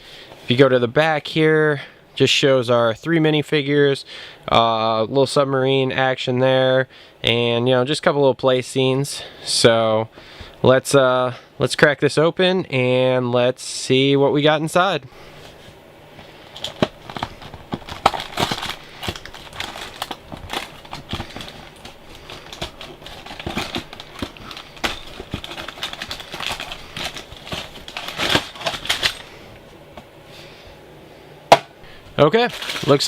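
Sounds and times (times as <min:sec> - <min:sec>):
cardboard crinkling and rustling: 0:15.4 - 0:30.1, 0:32.2 - 0:33.0.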